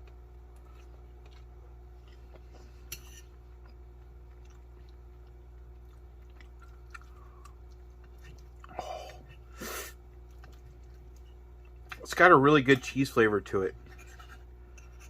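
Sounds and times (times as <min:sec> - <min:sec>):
chewing noodles: 0:00.0 - 0:12.0
steady low hum: 0:00.0 - 0:15.0.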